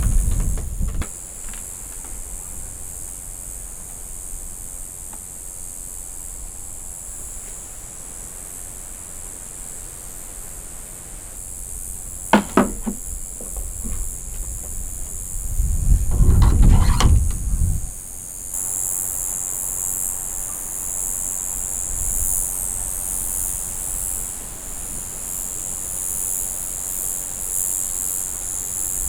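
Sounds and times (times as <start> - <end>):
wind buffeting microphone: 0.0 - 1.1, 12.7 - 18.0
insects chirping: 0.0 - 29.0
sharp clicks and knocks: 12.4 - 14.8, 16.1 - 17.4.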